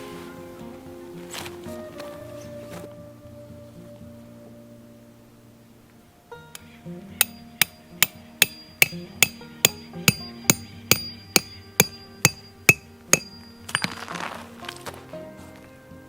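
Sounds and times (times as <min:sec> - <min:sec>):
rustling scrape: 0:00.0 - 0:03.0, 0:13.7 - 0:15.7
background music: 0:00.0 - 0:16.0
hammer striking: 0:07.1 - 0:14.1.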